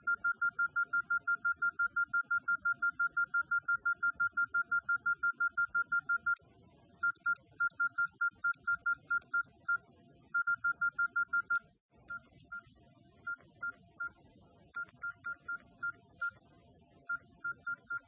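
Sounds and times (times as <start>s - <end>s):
phone keypad beeps: 0.0s - 6.4s, 7.0s - 9.8s, 10.4s - 12.2s, 14.8s - 16.4s, 17.1s - 18.0s.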